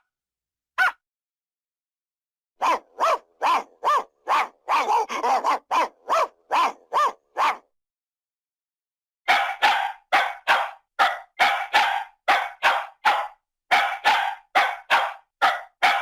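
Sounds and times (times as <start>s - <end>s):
dog barking: 0.8s - 1.0s, 2.6s - 7.7s, 9.3s - 16.0s.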